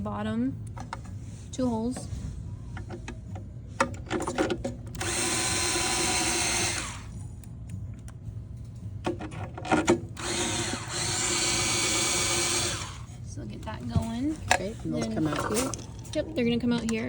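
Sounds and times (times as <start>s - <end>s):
power drill driving screws: 5.0s - 7.1s, 10.2s - 13.0s.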